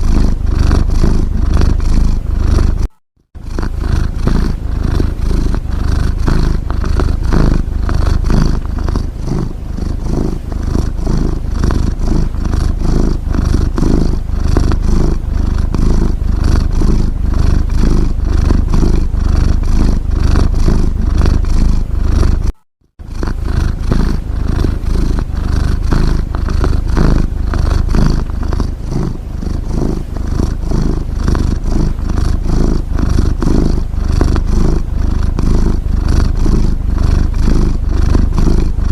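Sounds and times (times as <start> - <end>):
cat purring: 0.0 - 38.9.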